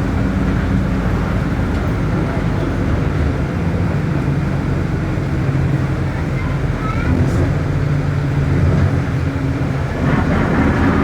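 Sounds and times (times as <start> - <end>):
bus diesel engine running: 0.0 - 11.0.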